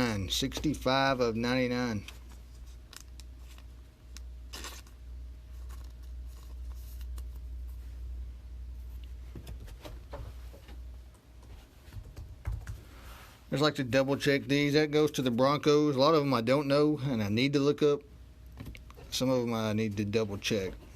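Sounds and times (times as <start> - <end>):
steady low hum: 0.0 - 20.9
soft rustles of handling: 1.8 - 12.0, 18.6 - 20.9.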